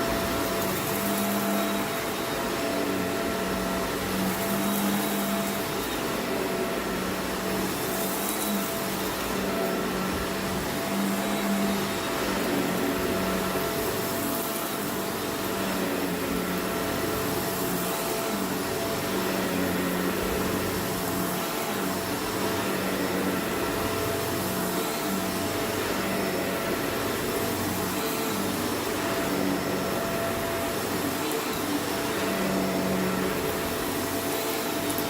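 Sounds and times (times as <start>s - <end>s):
vacuum cleaner running: 0.0s - 35.0s.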